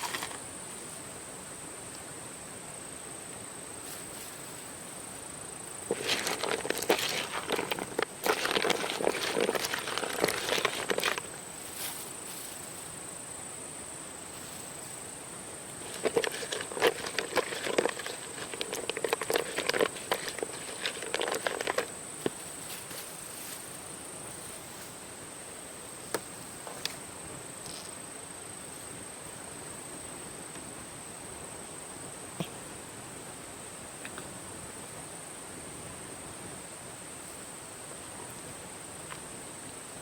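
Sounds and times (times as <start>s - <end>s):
rustling and crackling: 0.0s - 1.1s, 3.8s - 13.1s, 14.3s - 25.2s.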